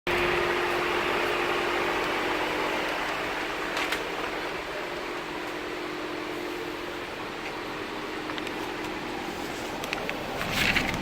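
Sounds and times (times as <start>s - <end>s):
constant hum: 0.1s - 11.0s.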